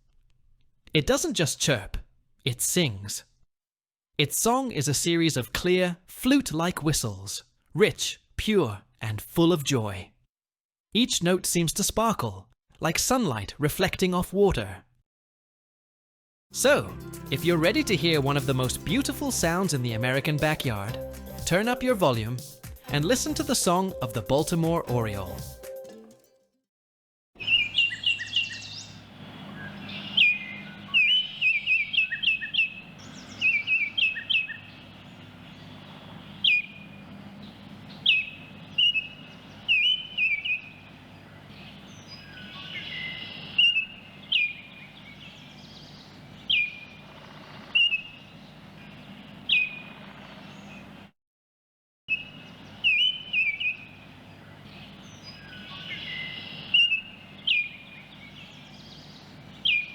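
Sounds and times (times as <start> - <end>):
bird singing whistled notes: 27.4 - 50.9, 52.1 - 59.9
low background hum: 27.4 - 51.1, 52.1 - 59.9.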